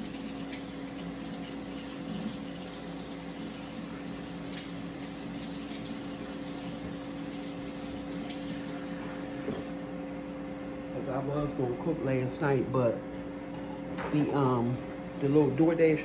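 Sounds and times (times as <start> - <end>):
air fryer fan whirring: 0.0 - 16.0.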